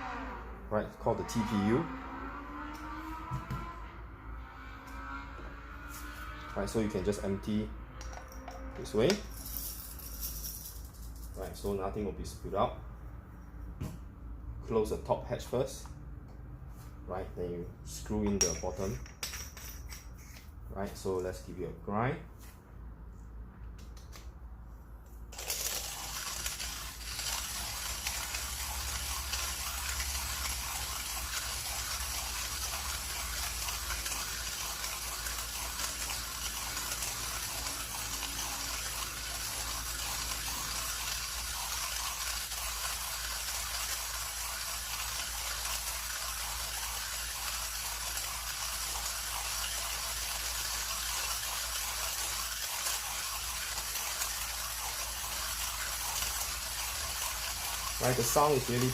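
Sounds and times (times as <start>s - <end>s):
hand coffee grinder crunching beans: 25.3s - 58.9s.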